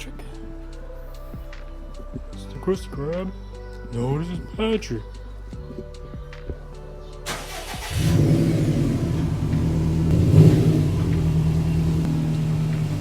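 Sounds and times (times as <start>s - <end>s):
car engine starting and idling: 7.2s - 13.0s.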